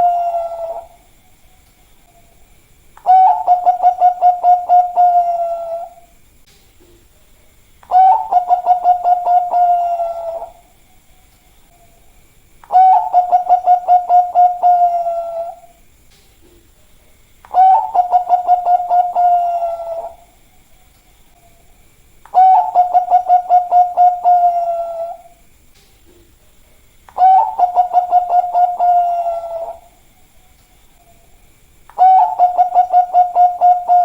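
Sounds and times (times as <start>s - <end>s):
dove cooing: 0.0s - 1.0s, 3.0s - 6.1s, 7.8s - 10.7s, 12.7s - 15.8s, 17.5s - 20.4s, 22.3s - 25.4s, 27.1s - 30.0s, 31.9s - 34.0s.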